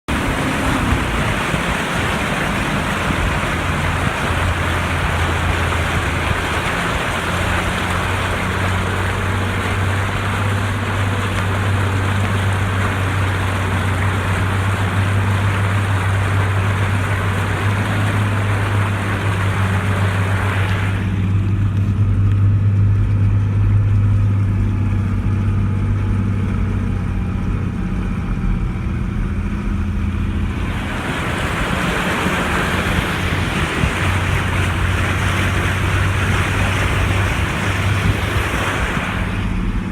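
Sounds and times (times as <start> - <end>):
vehicle engine running: 0.0 - 39.9
water rushing against vehicle: 0.0 - 39.9.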